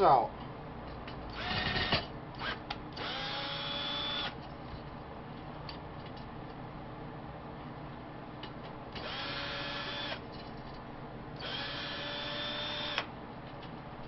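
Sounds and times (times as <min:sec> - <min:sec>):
power drill whining: 0:01.3 - 0:04.4, 0:09.0 - 0:10.2, 0:11.4 - 0:13.1.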